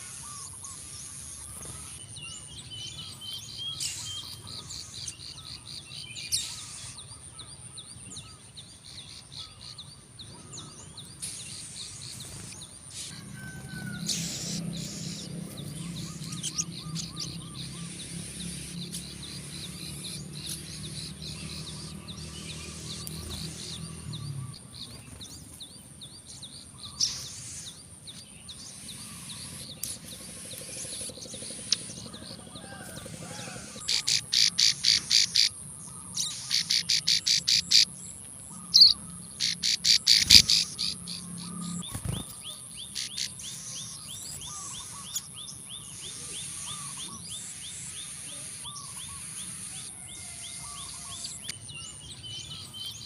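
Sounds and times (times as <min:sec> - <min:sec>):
faint bird chirping: 0:00.0 - 0:53.0.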